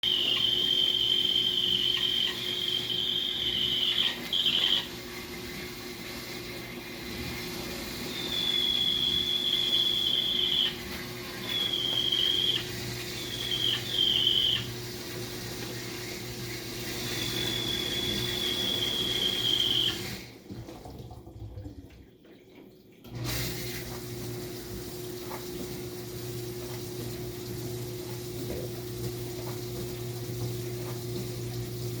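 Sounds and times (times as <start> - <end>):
high-pitched squeal: 0.0 - 4.9, 8.0 - 14.7, 17.0 - 20.1
dishwasher motor hum: 0.0 - 32.0.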